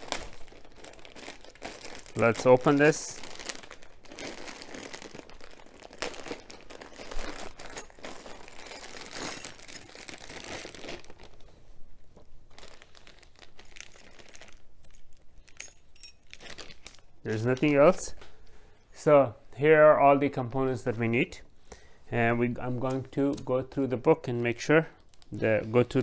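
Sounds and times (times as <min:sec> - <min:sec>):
packaging crinkling and tearing: 0:00.0 - 0:11.6, 0:12.5 - 0:15.6, 0:16.3 - 0:17.8.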